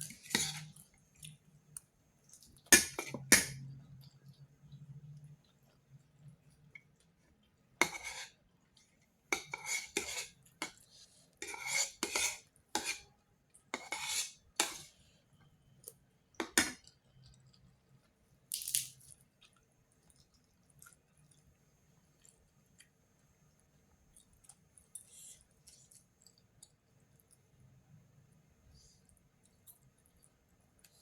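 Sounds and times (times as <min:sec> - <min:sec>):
dish and utensil scraping and clinking: 0:00.0 - 0:00.8, 0:07.8 - 0:08.4, 0:09.4 - 0:13.1, 0:13.7 - 0:14.9.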